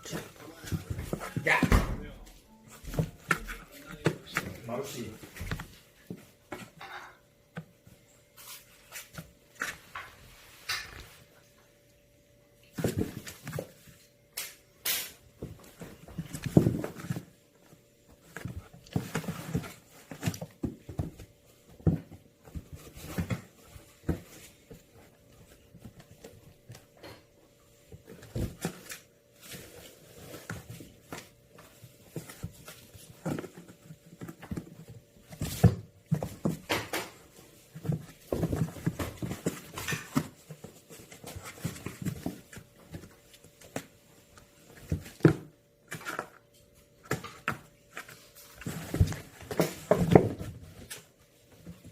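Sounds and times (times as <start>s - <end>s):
kittens scratching at a box: 15.2s - 27.0s, 27.8s - 46.4s.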